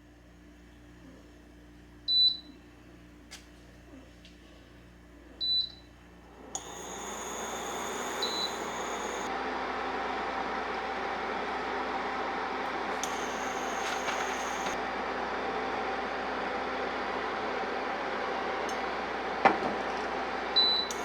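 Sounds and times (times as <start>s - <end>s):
appliance whirring hum: 0.0s - 21.0s
short high beeps: 6.6s - 9.2s.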